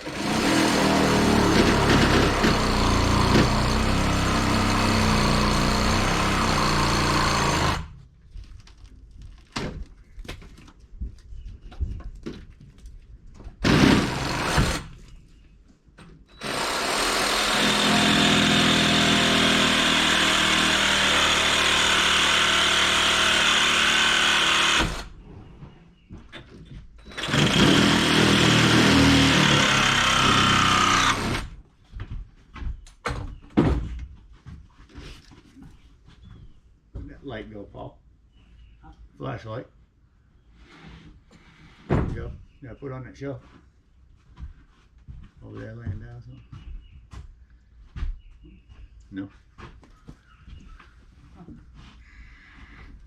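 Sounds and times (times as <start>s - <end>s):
power tool running: 0.0s - 8.0s, 13.6s - 14.9s, 16.4s - 25.2s, 27.0s - 31.6s.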